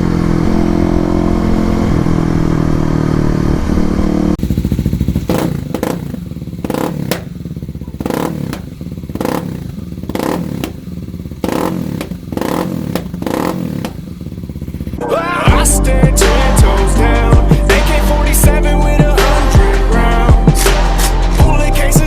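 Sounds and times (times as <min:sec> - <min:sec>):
motorcycle engine chugging: 0:03.8 - 0:22.0
exhaust pops: 0:04.3 - 0:15.0.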